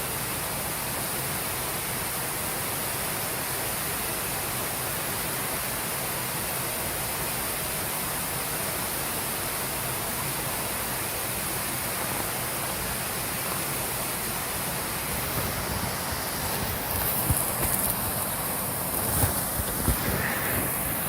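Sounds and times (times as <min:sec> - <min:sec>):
flowing water rushing: 0:00.0 - 0:21.0.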